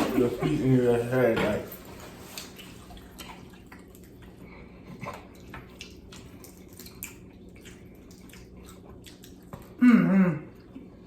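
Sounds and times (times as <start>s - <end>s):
chewing clicks and smacks: 2.3s - 9.8s.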